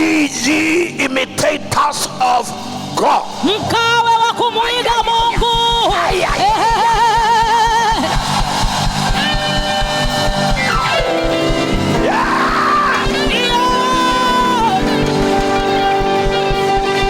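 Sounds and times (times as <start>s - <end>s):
church band music: 0.0s - 17.0s
low drum beat: 5.0s - 17.0s.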